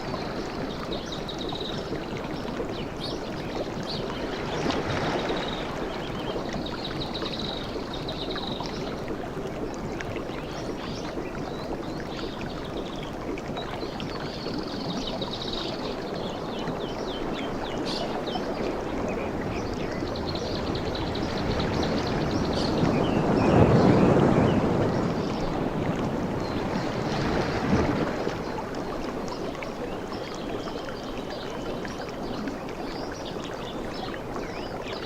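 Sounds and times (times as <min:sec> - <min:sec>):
surf washing on beach: 0:20.1 - 0:29.3.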